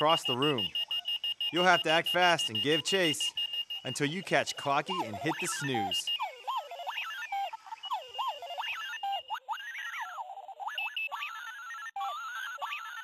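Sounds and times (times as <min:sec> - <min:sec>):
warbling electronic alarm beeps: 0:00.0 - 0:13.0.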